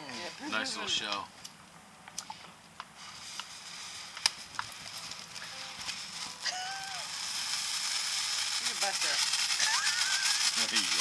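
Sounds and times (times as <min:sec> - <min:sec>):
fireworks crackling: 0:02.9 - 0:11.0
fireworks hiss: 0:03.0 - 0:11.0.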